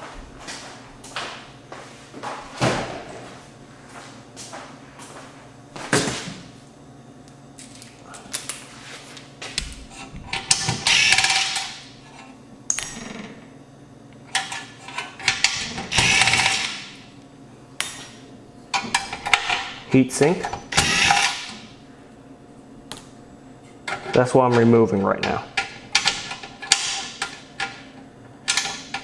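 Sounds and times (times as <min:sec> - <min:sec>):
cordless drill running: 0:10.8 - 0:11.3, 0:16.0 - 0:16.7, 0:20.8 - 0:21.3.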